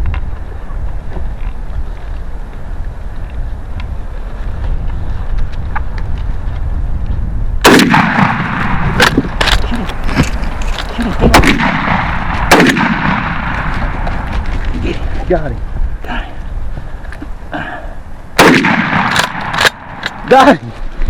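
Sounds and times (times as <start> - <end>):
shotgun blasts: 7.6 - 9.7, 11.2 - 14.0, 18.4 - 20.3.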